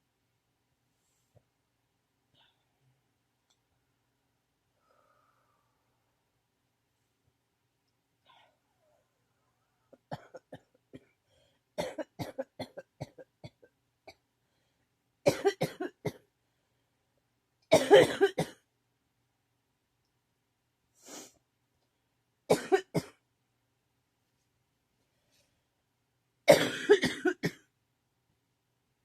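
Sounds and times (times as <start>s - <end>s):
person coughing: 11.8s - 13.6s, 15.3s - 16.2s, 17.7s - 18.6s, 22.5s - 23.2s, 26.5s - 27.7s.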